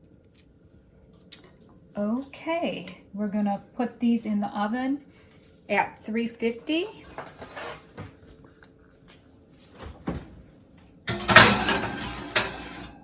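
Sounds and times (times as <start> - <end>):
baking tin scraping rattle: 11.1 - 13.0
oven door shutting: 11.1 - 13.0.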